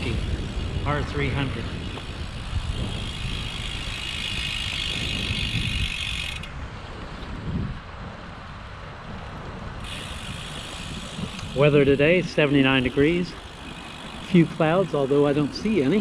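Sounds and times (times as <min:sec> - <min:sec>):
bicycle freewheel ticking: 0:00.0 - 0:06.6, 0:09.8 - 0:16.0
wind rumble on microphone: 0:00.0 - 0:16.0.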